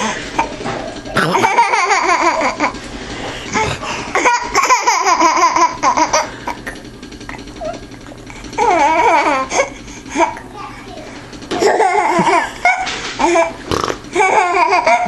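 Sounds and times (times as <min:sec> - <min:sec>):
young child giggling: 0:00.4 - 0:02.8, 0:11.6 - 0:13.5.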